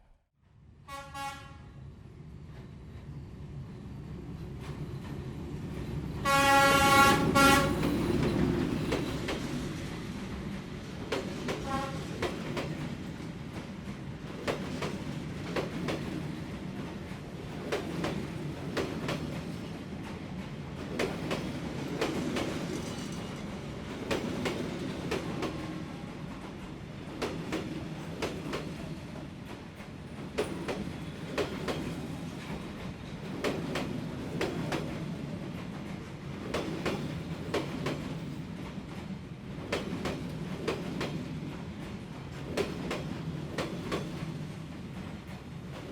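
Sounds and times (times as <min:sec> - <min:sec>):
low train rumble: 0:00.0 - 0:45.9
train horn: 0:00.8 - 0:01.8, 0:06.2 - 0:07.9, 0:11.6 - 0:12.2.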